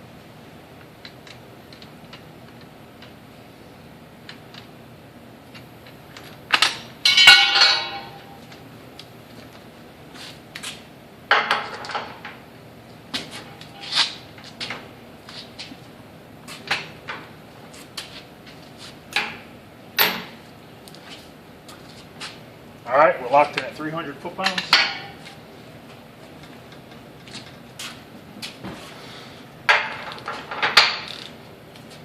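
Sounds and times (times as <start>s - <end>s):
ringing metal clatter: 7.1s - 8.4s.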